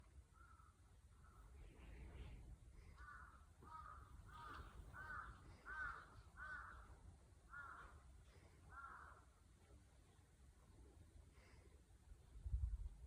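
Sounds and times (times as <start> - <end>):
crow cawing: 0.4 - 1.4, 2.9 - 8.0, 8.7 - 9.3.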